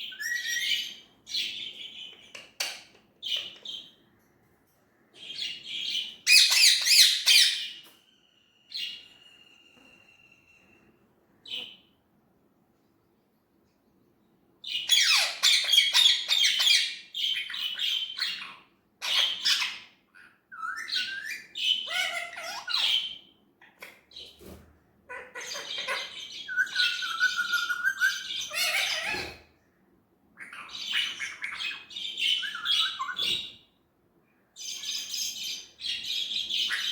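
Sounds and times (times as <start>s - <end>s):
parrot squawking and chirping: 0.0s - 4.0s, 5.2s - 10.8s, 14.6s - 24.3s, 25.1s - 29.5s, 30.4s - 33.7s, 34.6s - 36.9s.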